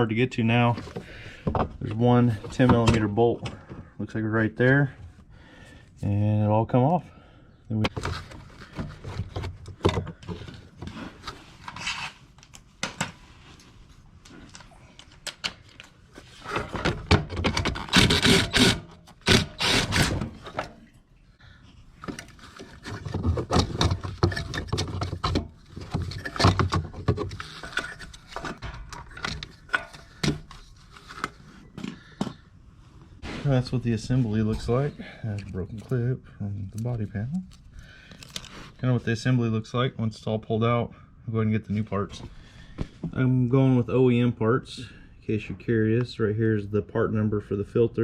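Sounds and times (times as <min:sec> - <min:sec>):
metal scraping: 0:22.0 - 0:32.1.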